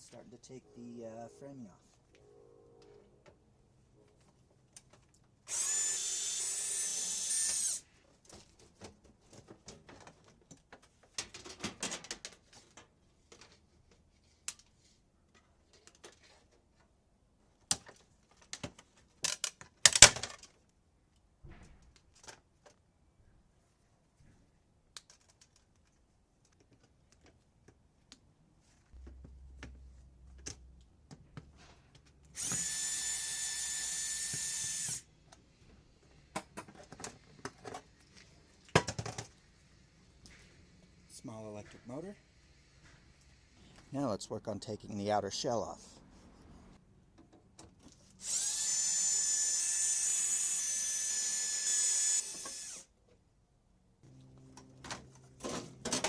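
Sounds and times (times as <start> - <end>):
power drill spinning out screws: 5.5 - 7.8, 32.4 - 39.4, 48.2 - 52.9.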